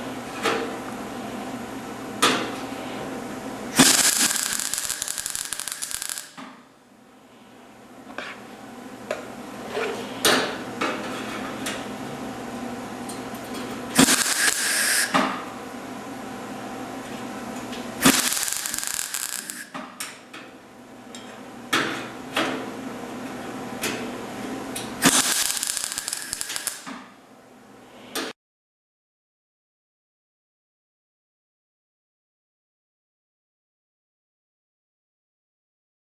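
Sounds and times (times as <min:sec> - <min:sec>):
harsh noisy bursts on sheet metal: 0:03.8 - 0:06.4, 0:14.0 - 0:15.2, 0:18.0 - 0:19.7, 0:25.0 - 0:26.9.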